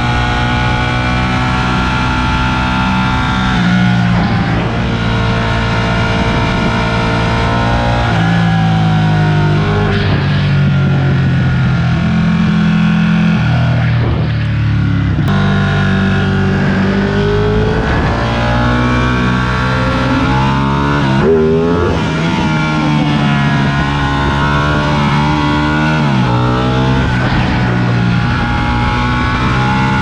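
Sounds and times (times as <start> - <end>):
motorcycle engine revving: 0.0 - 30.0.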